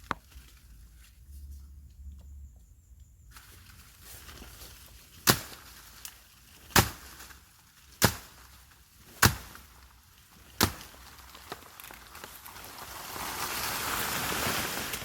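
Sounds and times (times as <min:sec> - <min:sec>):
machete chopping plant stem: 0:05.2 - 0:06.1, 0:06.7 - 0:07.4, 0:08.0 - 0:08.5, 0:09.1 - 0:09.7, 0:10.5 - 0:11.1.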